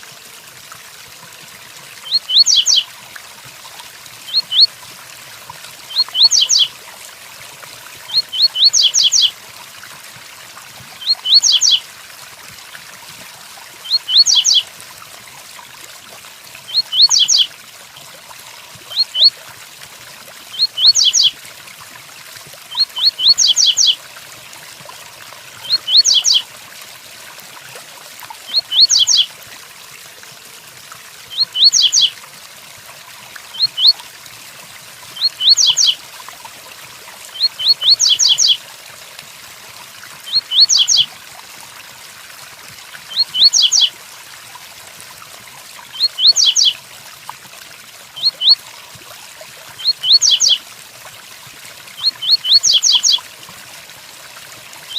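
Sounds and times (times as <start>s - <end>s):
rain hiss: 0.0s - 12.0s
bird singing high clear notes: 2.0s - 2.8s, 4.3s - 4.7s, 5.9s - 6.7s, 8.1s - 9.3s, 11.0s - 11.8s, 13.9s - 14.6s, 16.7s - 17.5s, 20.6s - 21.3s, 22.8s - 24.0s, 25.6s - 26.4s, 28.5s - 29.3s, 31.3s - 32.1s, 33.6s - 34.0s, 35.2s - 36.0s, 37.4s - 38.6s, 40.3s - 41.0s, 43.1s - 43.9s, 46.0s - 46.8s, 49.8s - 50.6s, 52.0s - 53.2s.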